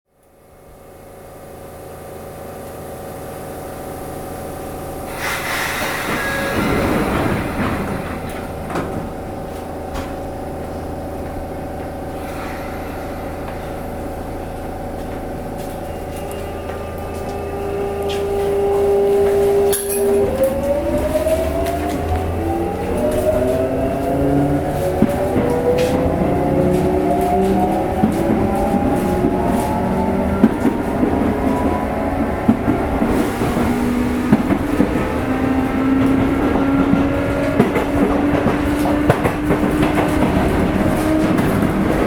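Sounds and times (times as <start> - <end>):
train inverter whine: 0.1 - 42.0
train equipment humming: 0.2 - 42.0
air hiss of doors: 5.0 - 8.6.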